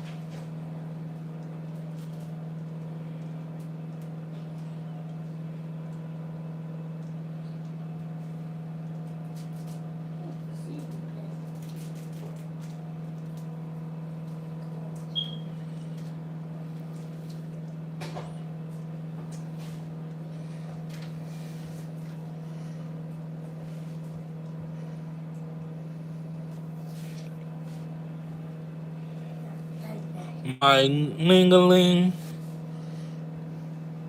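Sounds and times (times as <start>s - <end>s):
steady low hum: 0.0s - 34.0s
smoke detector chirp: 15.1s - 15.6s.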